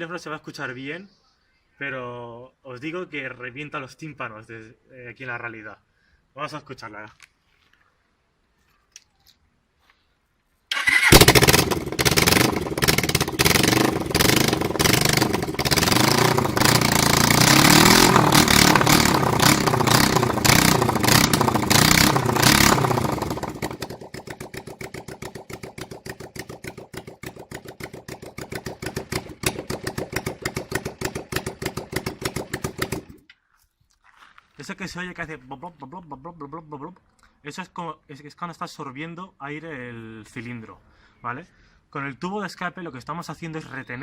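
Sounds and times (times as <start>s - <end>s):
motorcycle engine running loud: 11.1s - 33.2s.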